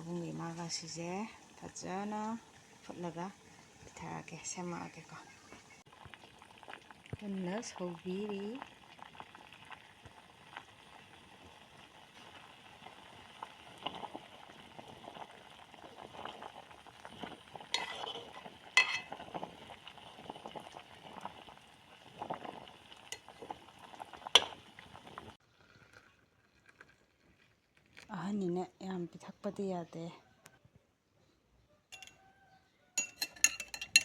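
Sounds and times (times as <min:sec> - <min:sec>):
pot boiling with bubbling hiss: 0:00.0 - 0:28.7, 0:33.0 - 0:34.0
sharp clinks: 0:32.0 - 0:32.2.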